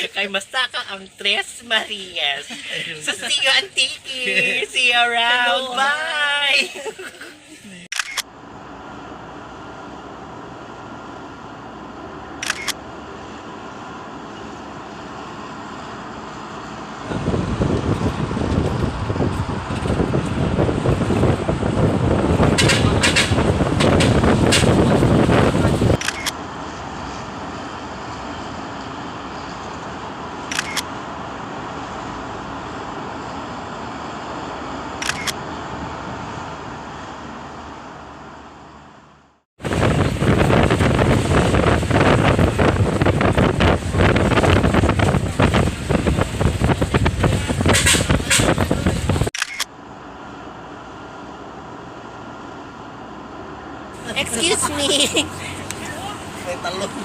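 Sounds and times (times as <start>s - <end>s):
moving vehicle travel noise: 0.0s - 57.0s
wind buffeting microphone: 17.0s - 26.0s, 39.6s - 49.3s
quick clicks: 49.4s - 49.7s.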